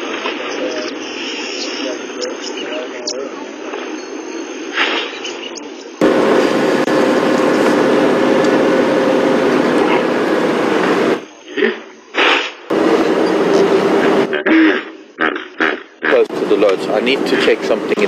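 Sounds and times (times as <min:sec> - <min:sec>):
vehicle engine running: 0:06.0 - 0:11.3, 0:12.7 - 0:14.5, 0:16.2 - 0:18.0.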